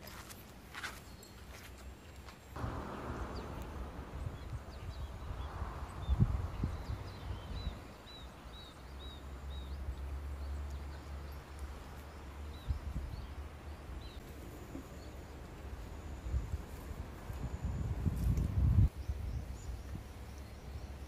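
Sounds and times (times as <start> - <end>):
low rumble: 2.6 - 7.7.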